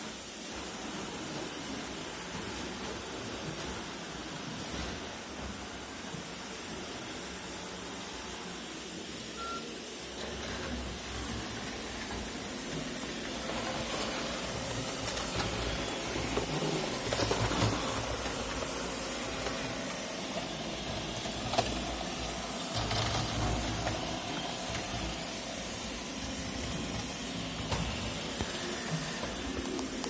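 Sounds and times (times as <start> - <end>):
robot vacuum whirring: 10.0 - 30.0.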